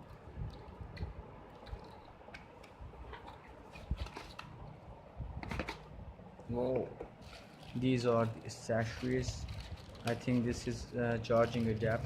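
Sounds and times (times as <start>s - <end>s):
packaging rustling and clicking: 1.6s - 4.6s, 7.2s - 12.0s.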